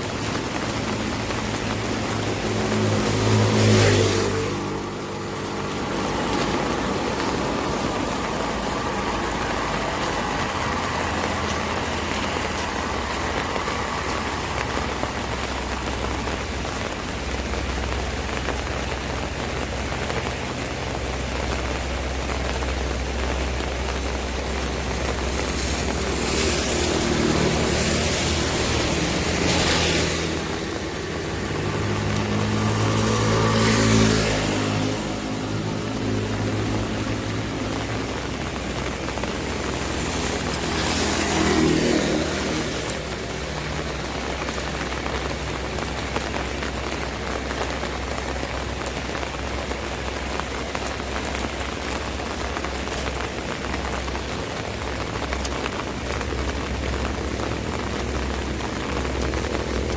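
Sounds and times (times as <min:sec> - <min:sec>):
low hum of car traffic: 0:00.0 - 0:59.9
rain on an umbrella: 0:00.0 - 0:59.9
vehicle engine: 0:00.0 - 0:59.9.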